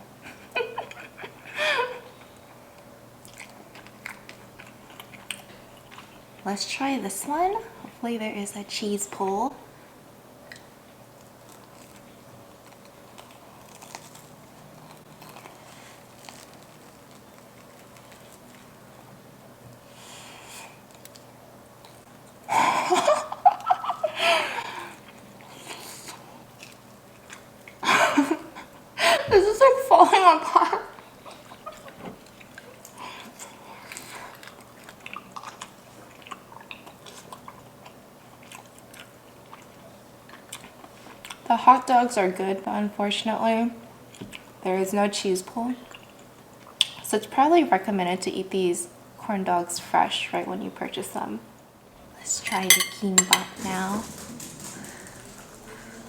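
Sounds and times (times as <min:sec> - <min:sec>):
crunchy eating and chewing: 0:02.2 - 0:06.4, 0:10.5 - 0:22.5, 0:24.8 - 0:27.8, 0:31.0 - 0:41.5, 0:45.8 - 0:47.0, 0:53.5 - 0:56.0.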